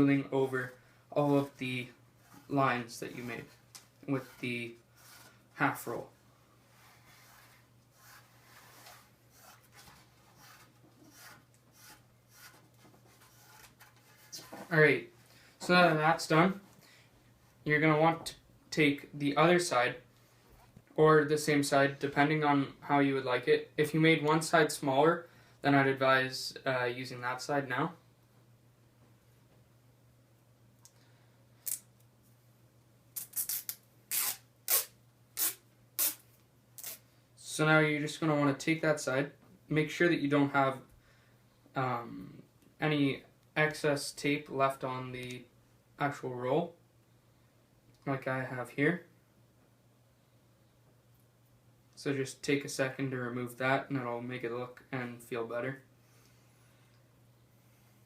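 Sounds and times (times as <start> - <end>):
hand rubbing cloth tape: 1.3 - 5.9, 6.7 - 14.8, 33.2 - 37.1
cloth tape tearing off roll: 31.6 - 31.9, 33.2 - 37.0.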